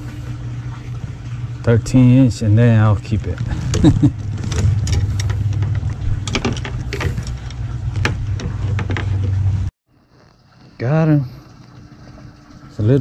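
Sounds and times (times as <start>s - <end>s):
low mechanical hum: 0.0s - 13.0s
sharp clicks and knocks: 3.6s - 9.4s.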